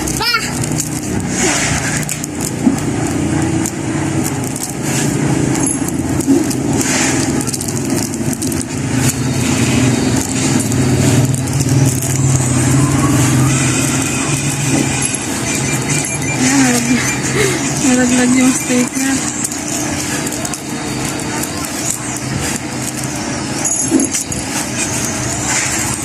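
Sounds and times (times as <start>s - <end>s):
pepper grinder grinding: 0.0s - 26.0s
low hum: 7.7s - 20.3s.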